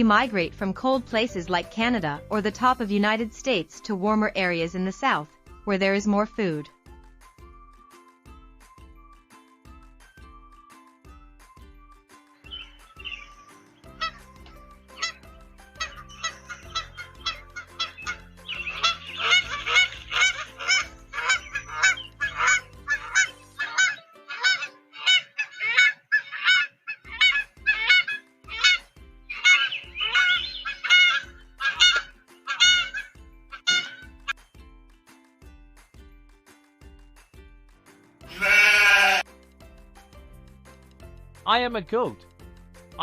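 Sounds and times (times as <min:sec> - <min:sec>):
geese honking: 0:12.6 - 0:34.2, 0:38.3 - 0:39.2.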